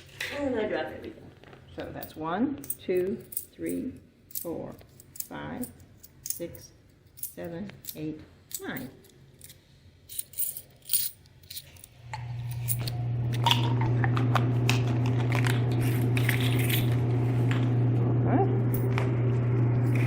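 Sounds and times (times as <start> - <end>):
coins clicking and clinking: 2.0 - 13.0, 15.8 - 17.0, 18.7 - 19.0
low machine hum: 11.8 - 20.0.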